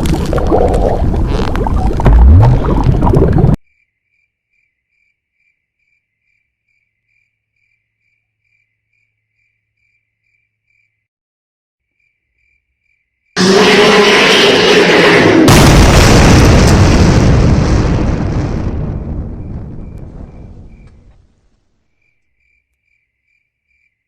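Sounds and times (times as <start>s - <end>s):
sudden loud noise: 0.0s - 3.6s, 13.4s - 21.0s
crickets chirping: 3.7s - 11.1s, 19.4s - 21.0s, 22.0s - 24.0s.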